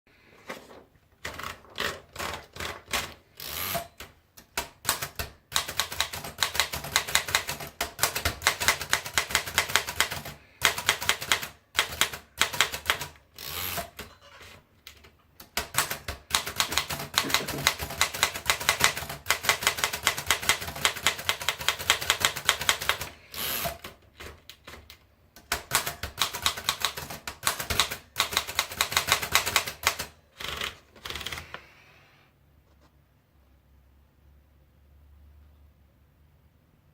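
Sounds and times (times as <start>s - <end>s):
typewriter key strikes: 15.4s - 23.1s.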